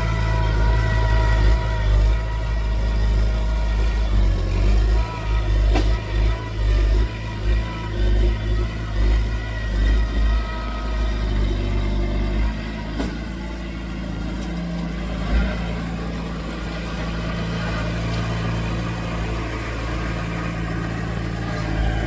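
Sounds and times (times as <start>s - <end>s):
heavy machinery diesel engine rumble: 0.0s - 22.0s.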